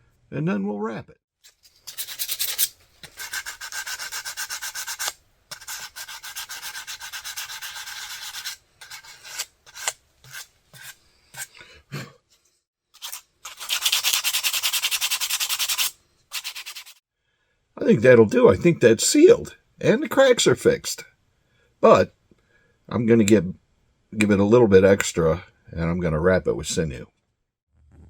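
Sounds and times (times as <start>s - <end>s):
sandpaper rubbing: 1.5s - 11.5s, 13.0s - 17.0s.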